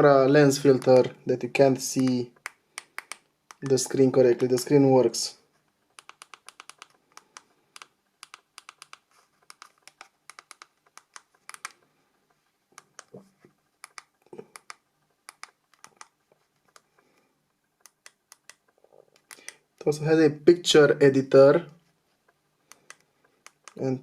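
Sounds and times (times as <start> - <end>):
phone keypad buttons clicking: 2.4 - 3.7, 6.0 - 11.8.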